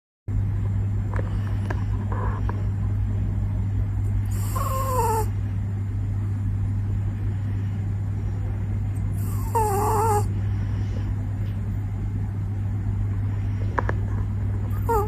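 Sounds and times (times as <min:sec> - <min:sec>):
puppy snoring: 0:04.2 - 0:05.4, 0:09.1 - 0:10.3, 0:14.7 - 0:15.0
puppy whining: 0:04.3 - 0:05.4, 0:09.2 - 0:10.3, 0:14.7 - 0:15.0.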